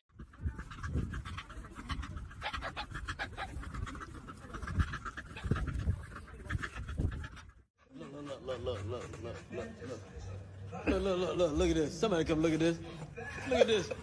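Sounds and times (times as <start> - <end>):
dog panting: 0.1 - 12.9.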